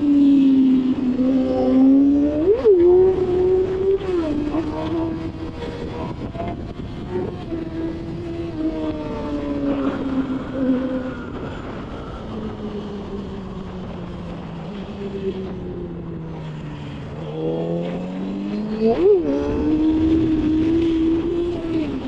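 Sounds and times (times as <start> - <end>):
motorcycle engine: 0.0 - 22.0
wind rushing over microphone: 0.0 - 22.0.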